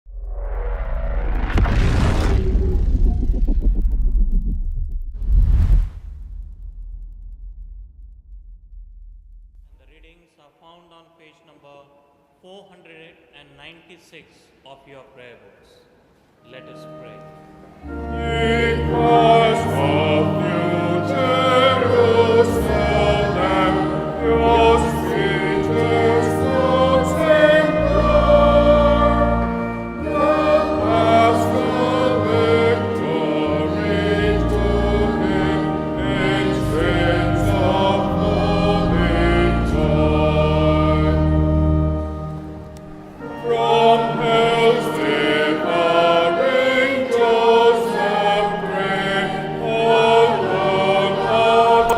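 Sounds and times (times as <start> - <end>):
church choir singing: 16.4 - 51.9
sustained low organ notes: 16.5 - 51.9.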